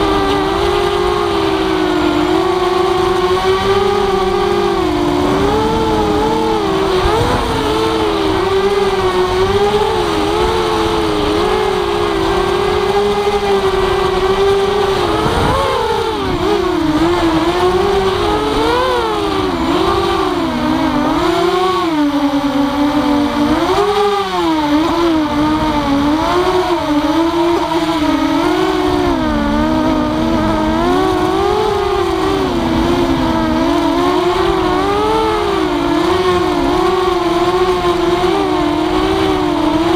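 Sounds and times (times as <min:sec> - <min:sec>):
quadcopter motors whining: 0:00.0 - 0:39.9.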